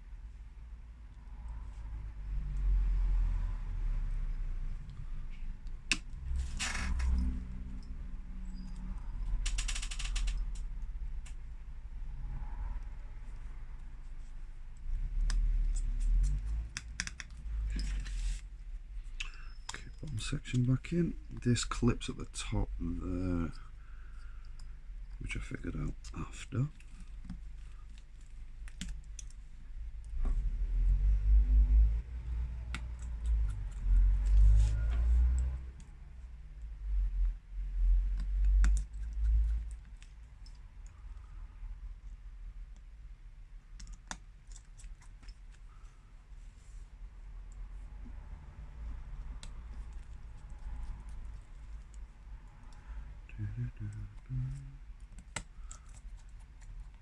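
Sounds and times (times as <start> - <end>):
small parts clicking and tapping: 8.6 - 11.4, 14.8 - 18.2, 23.4 - 30.2, 55.0 - 57.0.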